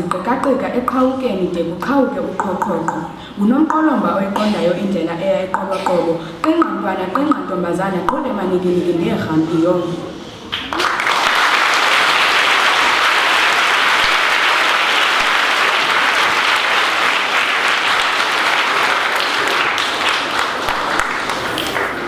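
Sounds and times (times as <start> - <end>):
audience applauding: 10.5 - 22.0.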